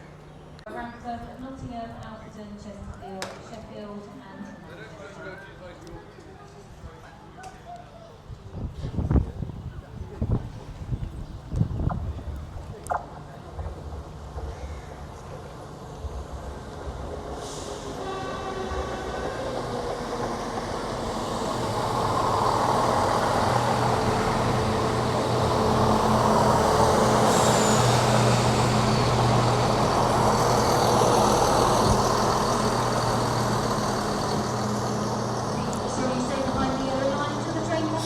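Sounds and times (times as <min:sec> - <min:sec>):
train rumble and engine hum: 0:00.0 - 0:38.0
distant horn tone: 0:17.9 - 0:19.8.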